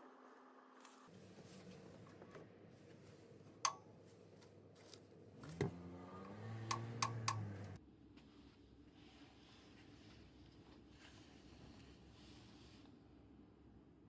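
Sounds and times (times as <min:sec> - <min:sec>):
low steady whirring: 0:05.2 - 0:07.8.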